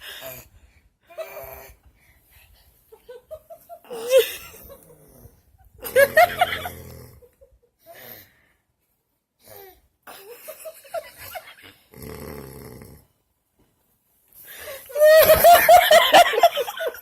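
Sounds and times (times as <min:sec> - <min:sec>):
stifled giggling: 0:02.9 - 0:07.9, 0:14.8 - 0:17.0
person snoring heavily: 0:11.9 - 0:13.1.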